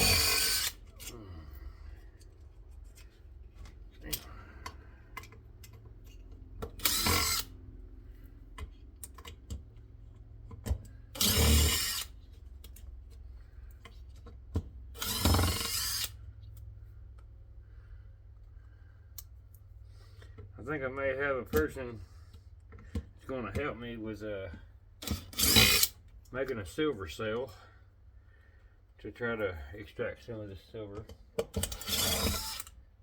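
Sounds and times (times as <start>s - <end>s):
power drill bursts: 0.0s - 0.8s, 6.8s - 7.5s, 11.2s - 12.1s, 15.0s - 16.1s, 25.0s - 25.9s, 31.7s - 32.7s.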